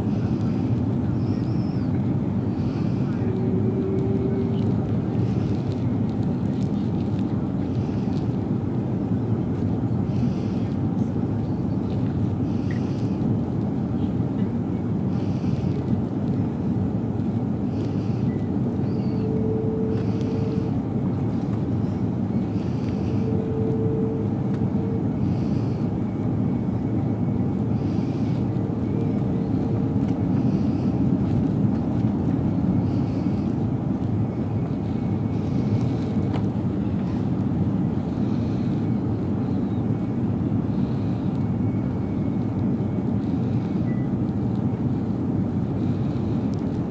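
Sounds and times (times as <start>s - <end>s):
airliner cabin engine noise: 0.0s - 46.9s
faint hum: 0.0s - 46.9s.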